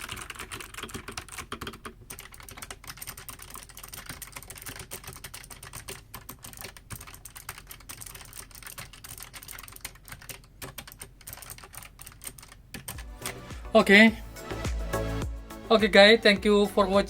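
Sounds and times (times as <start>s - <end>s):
fast typing on mechanical keyboard: 0.0s - 13.5s.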